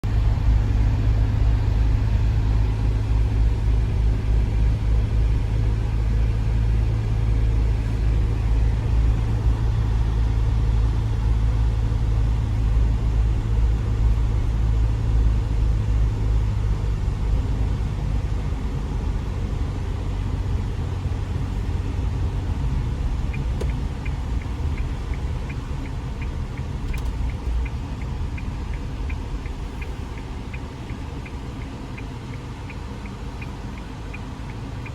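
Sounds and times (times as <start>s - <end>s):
car engine rumble: 0.0s - 34.9s
quick ticking: 23.2s - 34.9s.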